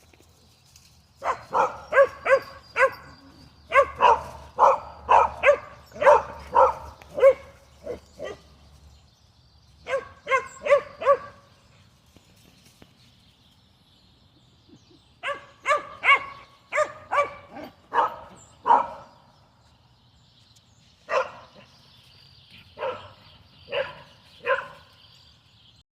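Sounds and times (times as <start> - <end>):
dog barking: 1.2 - 8.4, 9.8 - 11.4, 15.2 - 19.1, 21.1 - 21.4, 22.8 - 24.9.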